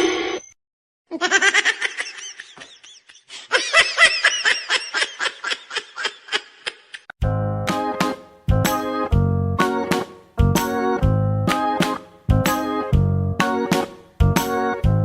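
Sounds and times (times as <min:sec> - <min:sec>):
person laughing: 0:01.1 - 0:07.1.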